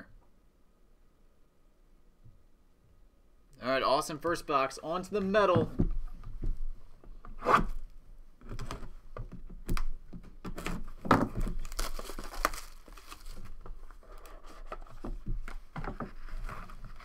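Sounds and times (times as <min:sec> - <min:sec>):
packaging tearing: 0:10.6 - 0:14.3
wrapper crinkling: 0:11.4 - 0:14.0.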